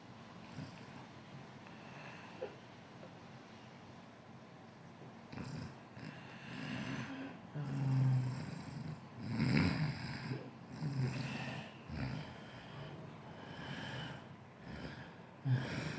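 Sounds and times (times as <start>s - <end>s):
person snoring: 5.3s - 15.9s.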